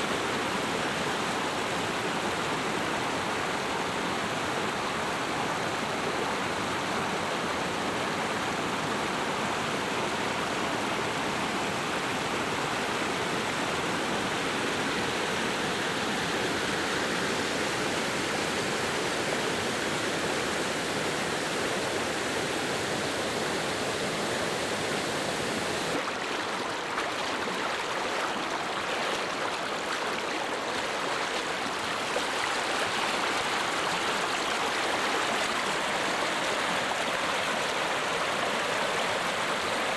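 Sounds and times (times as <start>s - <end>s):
running water: 14.5s - 39.9s
heavy rain: 20.5s - 26.0s.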